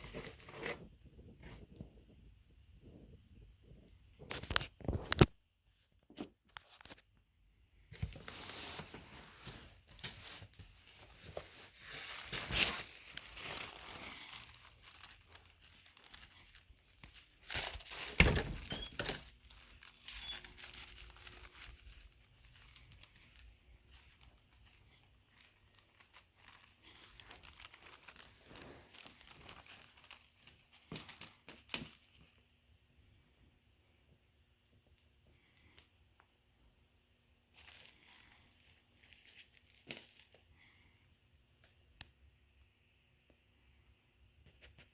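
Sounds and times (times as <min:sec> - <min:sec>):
packaging crinkling and rustling: 0:04.0 - 0:05.4, 0:07.9 - 0:32.4, 0:37.5 - 0:40.5.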